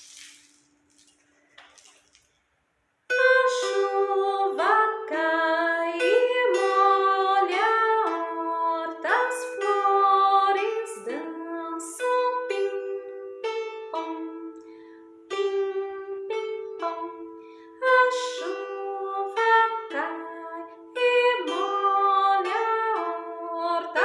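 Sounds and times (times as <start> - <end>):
woman singing: 3.1 - 13.1, 15.9 - 24.0
plucked zither: 3.1 - 24.0.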